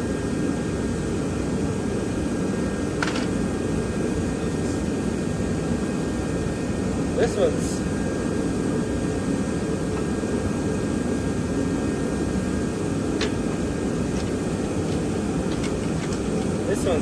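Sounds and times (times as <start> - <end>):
whooshing fan noise: 0.0 - 17.0.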